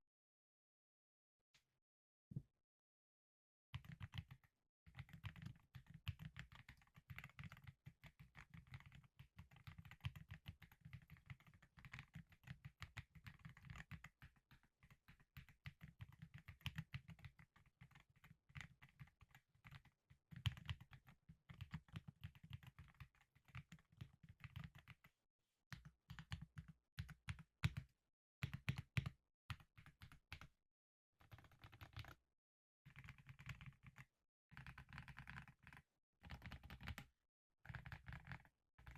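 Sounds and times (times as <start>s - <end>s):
mechanical keyboard typing: 3.8s - 14.1s, 32.9s - 34.0s, 34.6s - 37.1s, 37.7s - 38.9s.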